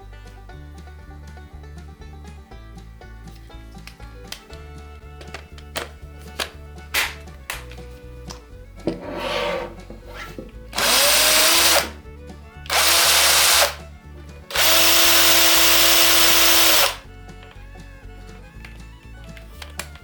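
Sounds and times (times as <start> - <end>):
cordless power driver whirring: 9.5 - 12.0, 12.7 - 13.8, 14.5 - 17.0.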